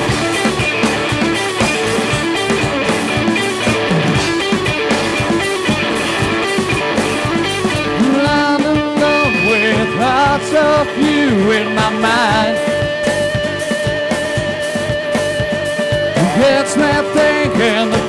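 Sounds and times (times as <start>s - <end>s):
guitar-led band music: 0.0s - 18.0s
wavering held melody line: 8.8s - 14.0s.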